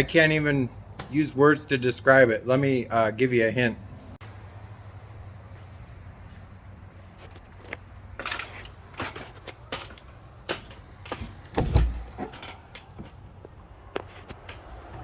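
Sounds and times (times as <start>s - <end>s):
heavy thump: 11.5s - 12.2s.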